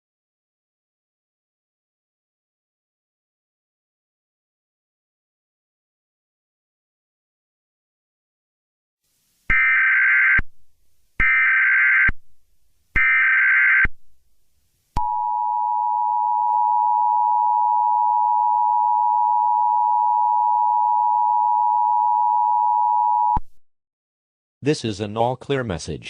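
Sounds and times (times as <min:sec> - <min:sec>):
steady attention tone: 0:15.0 - 0:23.4.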